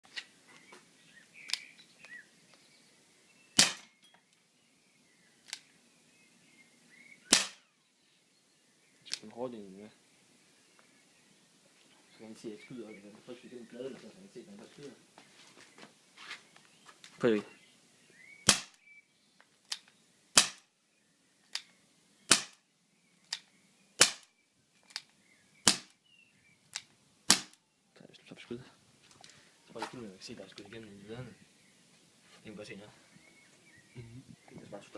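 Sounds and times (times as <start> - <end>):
pistol shots: 3.6 - 4.0, 7.3 - 7.7, 18.5 - 18.8, 20.4 - 20.7, 22.3 - 22.6.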